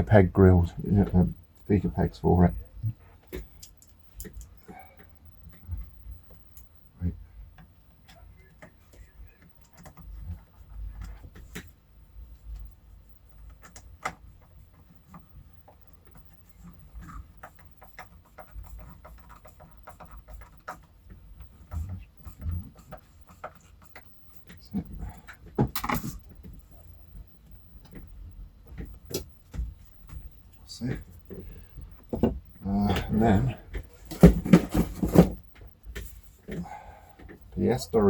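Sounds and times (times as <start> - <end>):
hands handling speaker cabinet: 32.0 - 36.6.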